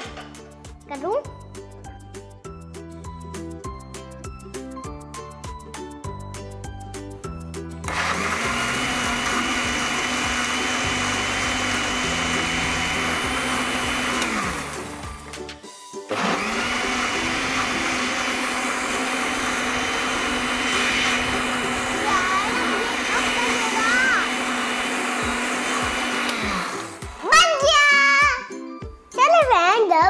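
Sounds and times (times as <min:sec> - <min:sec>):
electric blender motor whining: 0:07.9 - 0:15.4, 0:16.1 - 0:27.7.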